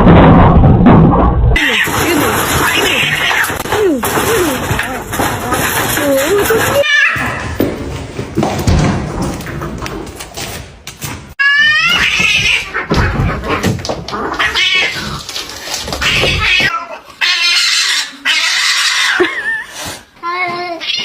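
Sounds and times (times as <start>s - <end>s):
cats yowling and meowing: 5.6s - 7.4s, 11.4s - 19.3s.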